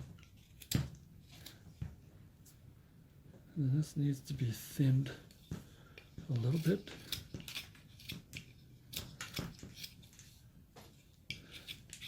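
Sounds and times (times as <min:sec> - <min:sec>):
carving knife cutting wood: 0:00.2 - 0:01.6, 0:06.3 - 0:10.2, 0:11.0 - 0:12.0.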